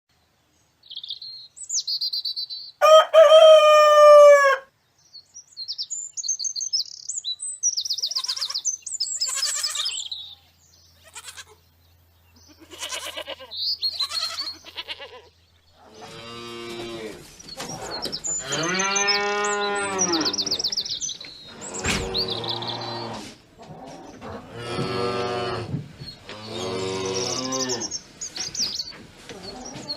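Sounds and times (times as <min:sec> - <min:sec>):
drawn-out crowing calls: 0:02.8 - 0:04.7, 0:12.6 - 0:28.0
rooster crowing: 0:02.8 - 0:04.7
chicks peeping and chirping: 0:26.0 - 0:29.9.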